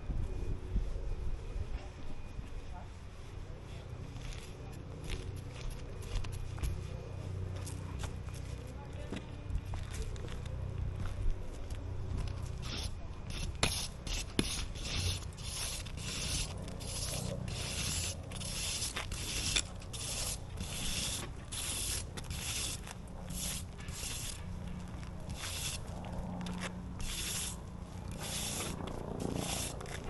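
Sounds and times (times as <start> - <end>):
brush scraping hard surface: 12.4 - 30.0.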